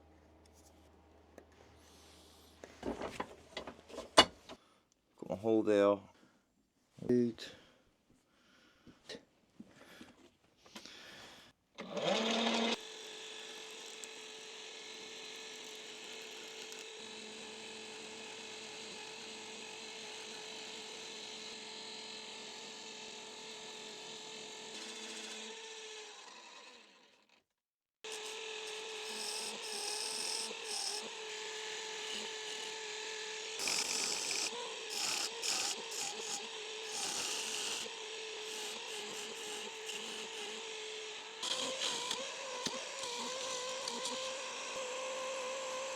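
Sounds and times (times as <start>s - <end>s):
wood lathe motor whine: 11.8s - 27.4s, 28.1s - 45.9s
tool scraping wood: 28.1s - 32.7s, 33.6s - 40.7s, 41.4s - 44.8s.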